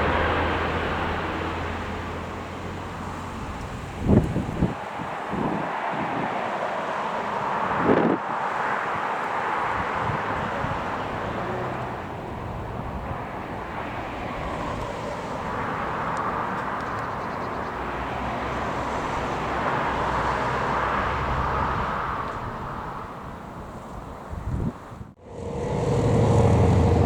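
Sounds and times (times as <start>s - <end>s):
airliner engine rumble: 25.0s - 27.0s.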